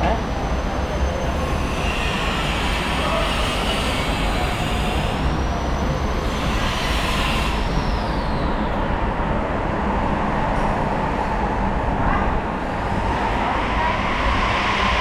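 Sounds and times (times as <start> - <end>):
rumble of passing vehicles: 0.0 - 15.0.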